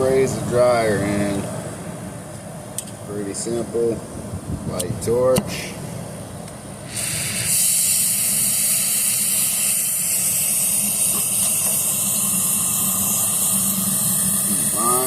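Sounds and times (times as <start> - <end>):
brazing torch hissing: 6.8 - 15.0.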